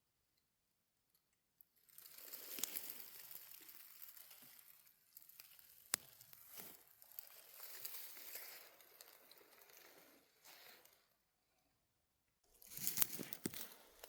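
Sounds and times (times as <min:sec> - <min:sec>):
sharp crackles: 0:02.0 - 0:10.8, 0:12.6 - 0:14.0.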